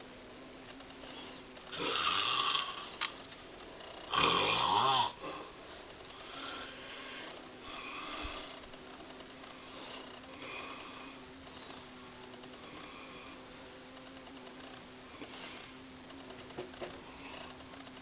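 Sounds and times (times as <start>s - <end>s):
person snoring: 1.0s - 3.0s, 4.0s - 5.6s, 6.2s - 8.6s, 9.6s - 11.9s
faint breaths: 5.2s - 13.7s, 16.9s - 17.8s.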